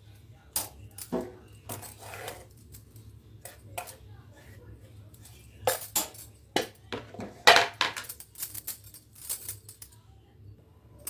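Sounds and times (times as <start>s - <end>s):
utensils clinking against bowl: 0.5s - 4.0s, 5.1s - 9.9s.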